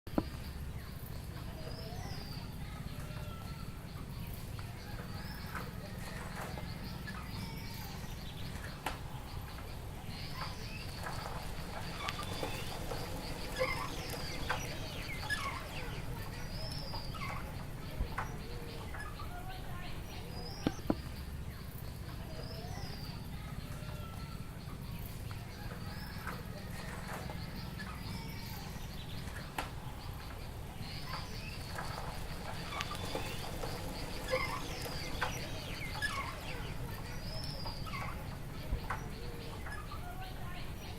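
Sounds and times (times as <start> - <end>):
birds chirping and calling: 0.1 - 40.9
clicks: 20.4 - 21.2.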